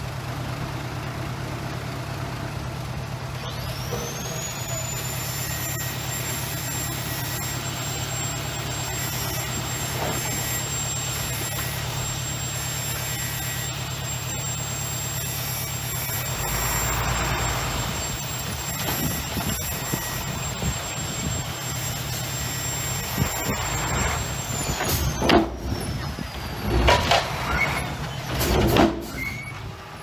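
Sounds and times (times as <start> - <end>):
diesel engine deep rumble: 0.0 - 30.0
thin high whine: 3.9 - 26.8.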